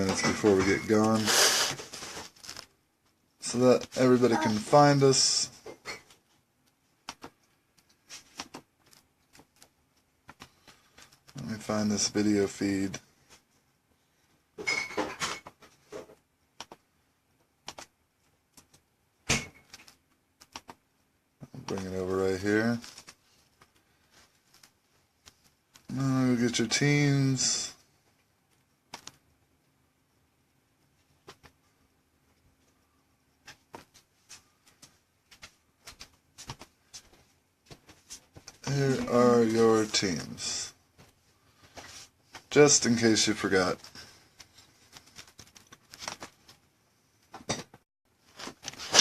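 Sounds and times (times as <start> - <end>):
handling rustle: 0.0 - 2.7, 40.9 - 46.7, 48.2 - 49.0
keyboard and mouse clicking: 19.7 - 20.8.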